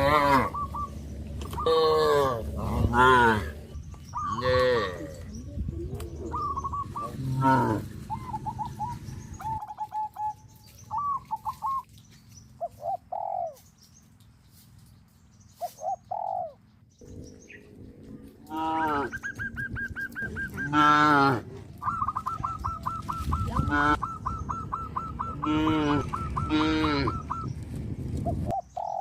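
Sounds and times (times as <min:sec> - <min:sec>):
loud arching animal calls: 0:00.0 - 0:05.4, 0:18.4 - 0:27.6
steady low hum: 0:00.0 - 0:28.7
falling bird calls: 0:00.0 - 0:29.0.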